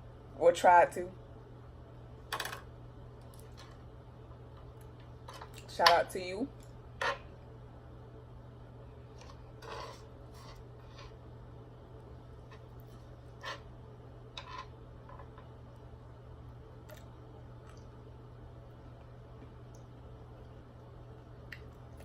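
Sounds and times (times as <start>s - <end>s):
steady low hum: 0.0s - 22.0s
knife and fork on a plate: 13.4s - 13.7s, 14.4s - 15.3s.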